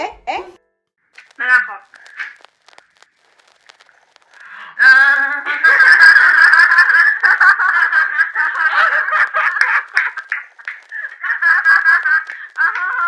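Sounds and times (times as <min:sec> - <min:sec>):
women laughing loudly: 0:05.5 - 0:13.0.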